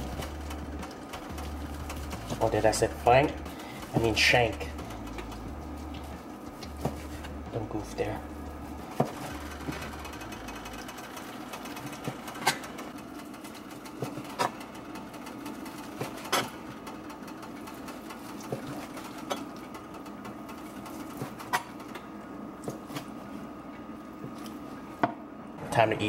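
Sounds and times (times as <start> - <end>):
low hum: 0.0 - 13.0.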